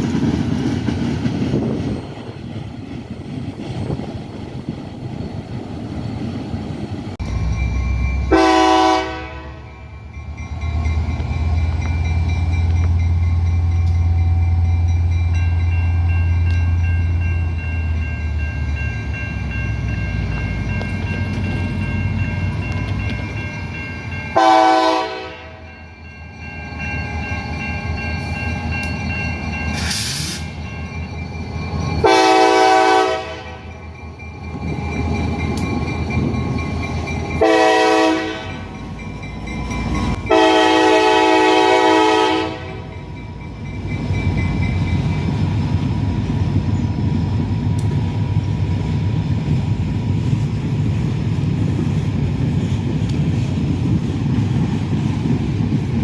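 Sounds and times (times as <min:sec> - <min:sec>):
low rumble of moving train: 0:00.0 - 0:56.0
locomotive air horn blasts: 0:08.3 - 0:09.9, 0:24.4 - 0:25.6, 0:32.0 - 0:33.7, 0:37.4 - 0:38.7, 0:40.3 - 0:42.9.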